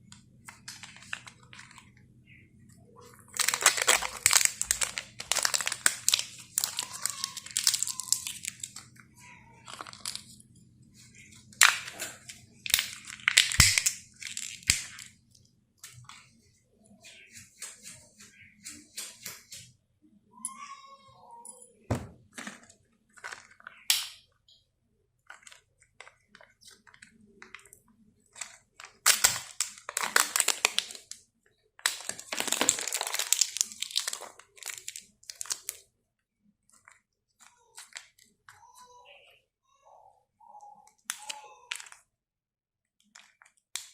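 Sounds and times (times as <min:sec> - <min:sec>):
packaging crinkling and crunching: 0:00.5 - 0:02.0, 0:03.0 - 0:09.0, 0:09.6 - 0:10.4, 0:11.2 - 0:15.4, 0:22.4 - 0:23.9, 0:25.2 - 0:31.2, 0:31.8 - 0:35.8.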